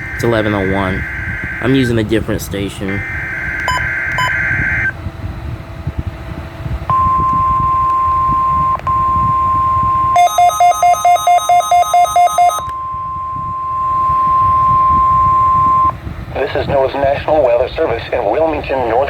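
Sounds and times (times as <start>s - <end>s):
rapid electronic beeping: 0.0s - 2.1s, 2.8s - 4.9s, 6.9s - 15.9s
steady warning alarm tone: 0.0s - 5.0s, 6.9s - 16.0s.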